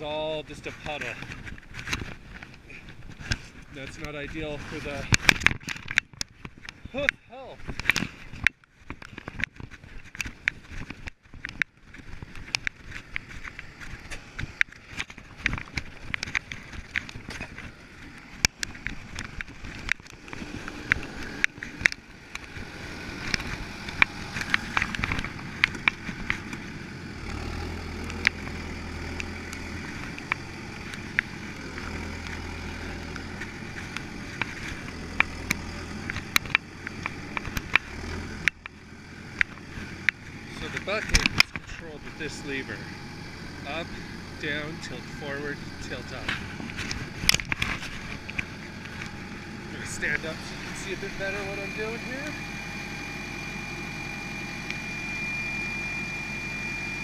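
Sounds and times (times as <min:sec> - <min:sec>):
tractor engine starting and idling: 0:00.0 - 0:57.0
sharp clicks and knocks: 0:00.7 - 0:26.8, 0:33.0 - 0:42.3.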